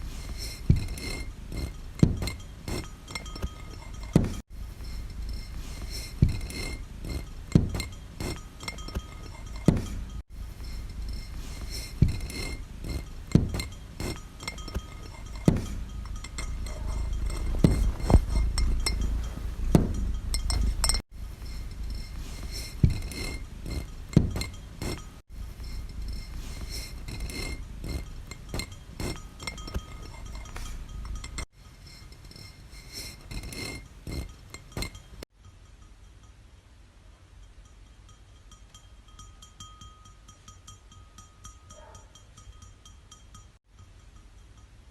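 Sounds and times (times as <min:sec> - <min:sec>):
clinks and knocks: 0:00.2 - 0:36.2
high ringing: 0:13.4 - 0:21.0.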